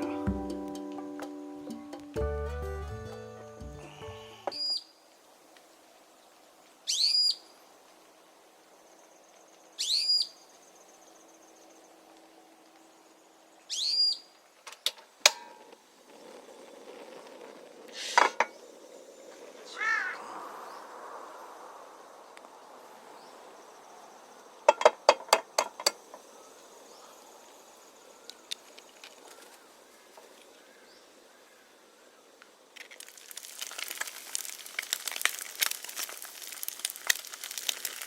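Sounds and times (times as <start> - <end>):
bird whistling calls: 4.5 - 4.9, 6.9 - 7.4, 9.8 - 10.4, 13.7 - 14.2.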